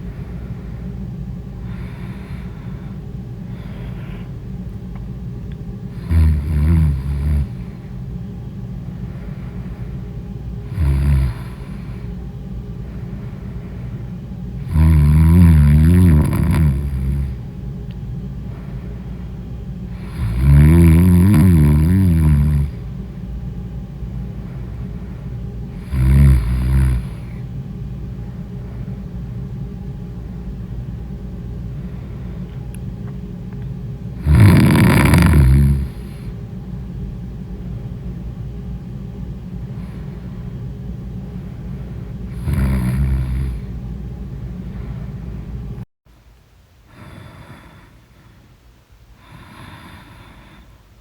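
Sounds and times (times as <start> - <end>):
steady low hum: 0.0 - 51.0
person snoring loudly: 1.6 - 2.9, 5.9 - 7.8, 10.6 - 12.1, 14.6 - 17.4, 19.9 - 22.8, 25.7 - 27.4, 34.2 - 36.3, 42.3 - 43.7, 49.2 - 50.6.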